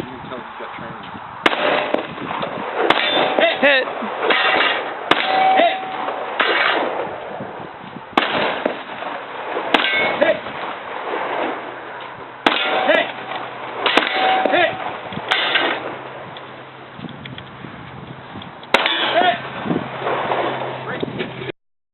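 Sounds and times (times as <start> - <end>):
pistol shots: 1.4 - 3.6, 4.2 - 7.1, 8.2 - 11.7, 12.4 - 16.0, 18.7 - 20.5
steel target ringing: 2.9 - 3.6, 4.3 - 6.9, 9.7 - 10.4, 12.4 - 16.0, 18.7 - 19.4.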